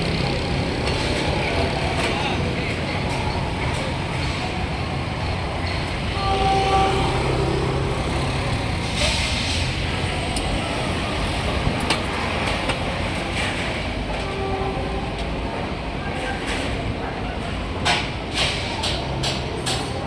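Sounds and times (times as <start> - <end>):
engine or horn tone: 6.1 - 8.6.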